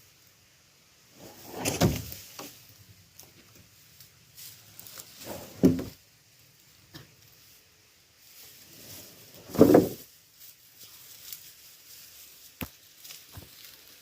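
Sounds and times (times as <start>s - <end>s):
heavy thump: 5.4s - 6.0s, 9.5s - 10.0s.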